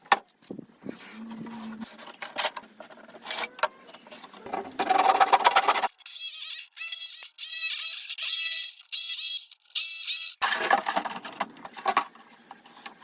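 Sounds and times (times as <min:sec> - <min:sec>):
knocks clicks and scraping: 0:01.6 - 0:05.9.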